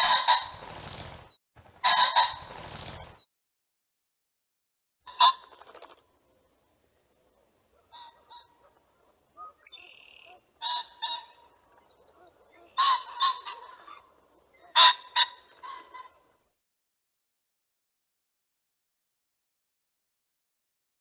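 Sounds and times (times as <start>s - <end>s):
pheasant calling: 5.1s - 6.1s, 7.4s - 16.3s.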